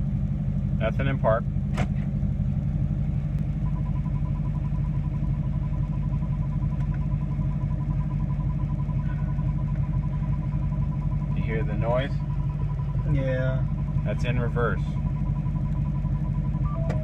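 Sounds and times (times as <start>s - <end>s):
diesel engine idling: 0.0s - 17.0s
man talking: 0.8s - 1.4s, 11.4s - 12.2s, 13.1s - 15.0s.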